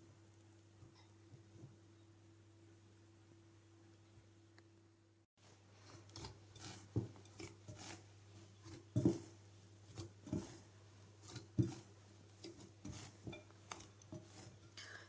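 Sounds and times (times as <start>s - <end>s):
dough rubbing and squishing: 5.4s - 15.0s.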